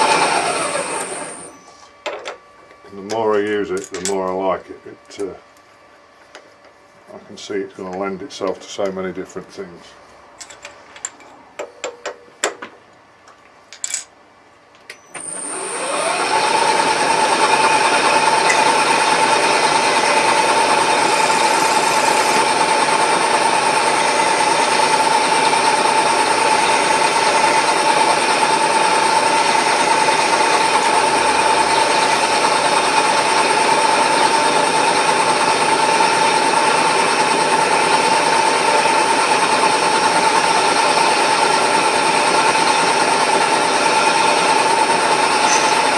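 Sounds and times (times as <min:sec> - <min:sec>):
machine tool motor whining: 0:00.0 - 0:01.9, 0:14.9 - 0:45.9.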